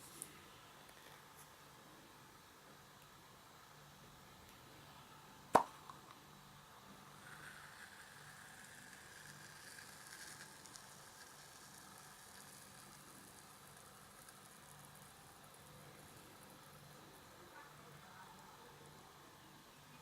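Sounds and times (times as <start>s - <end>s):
slime crackling hiss: 7.1s - 17.5s.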